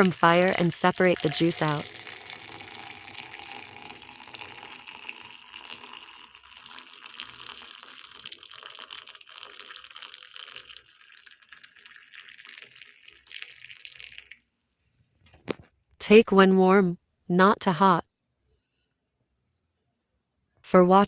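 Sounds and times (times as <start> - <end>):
hot liquid pouring and splashing: 0.0 - 14.6.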